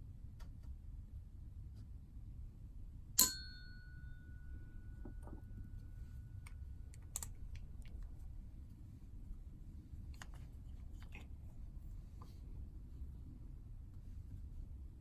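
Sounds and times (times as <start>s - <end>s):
ringing metallic clink: 3.2s - 5.2s.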